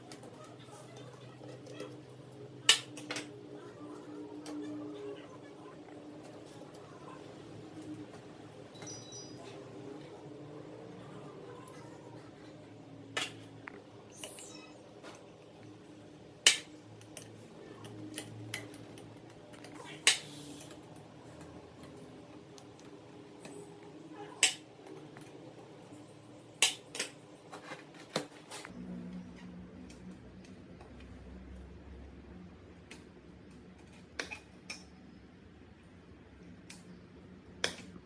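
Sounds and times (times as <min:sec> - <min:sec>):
tools clinking and knocking: 0:08.7 - 0:09.6.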